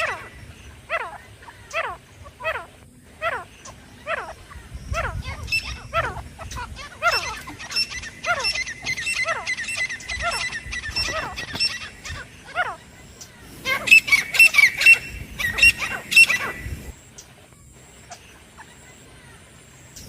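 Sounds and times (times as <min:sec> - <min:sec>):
francolin calling: 0:00.0 - 0:20.0.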